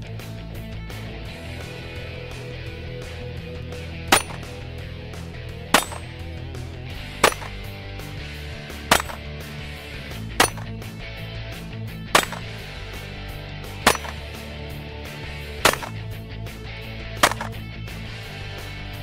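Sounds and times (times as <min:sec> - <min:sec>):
pistol shots: 0:05.8 - 0:06.1, 0:07.2 - 0:07.6, 0:12.2 - 0:12.5, 0:13.9 - 0:14.2.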